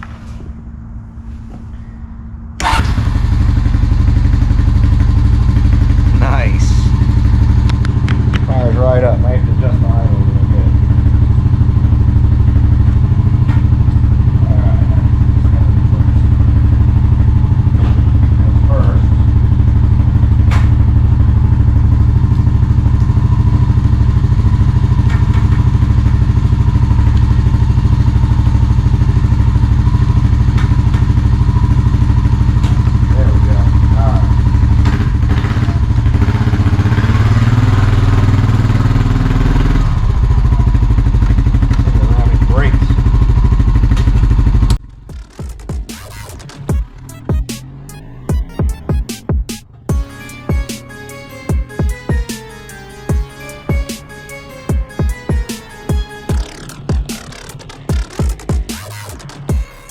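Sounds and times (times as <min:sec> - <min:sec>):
engine idling: 0:00.0 - 0:59.9.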